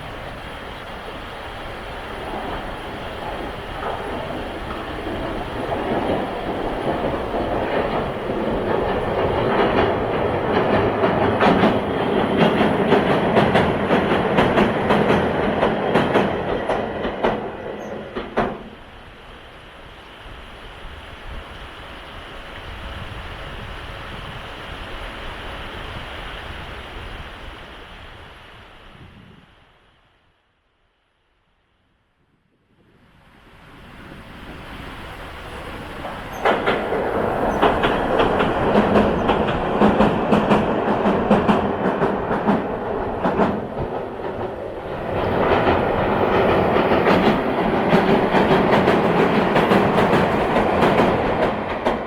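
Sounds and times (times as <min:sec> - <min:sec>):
electric train passing: 0:00.0 - 0:28.8, 0:33.1 - 0:52.0
wheels clacking over rail joints: 0:02.1 - 0:18.8, 0:34.8 - 0:52.0.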